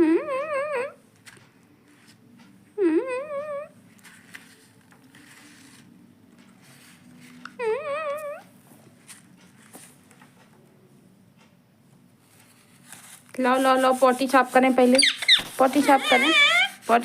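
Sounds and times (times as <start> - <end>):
parrot warbling calls: 14.9 - 16.8.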